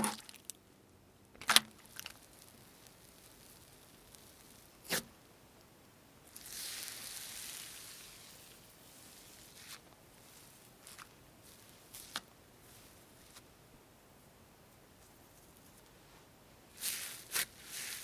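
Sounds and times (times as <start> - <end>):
crunchy material crumbling and crackling: 1.4 - 5.0, 6.3 - 13.4, 16.8 - 18.0.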